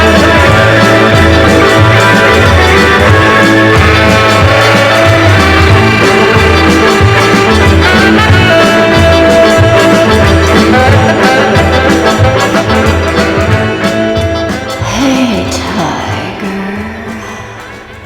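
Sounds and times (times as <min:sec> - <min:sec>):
instrumental band music: 0:00.0 - 0:18.0.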